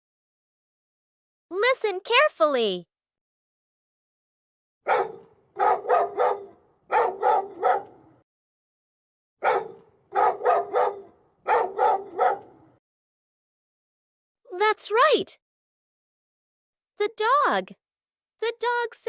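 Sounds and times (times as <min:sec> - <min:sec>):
dog barking: 0:04.8 - 0:08.2, 0:09.4 - 0:12.8.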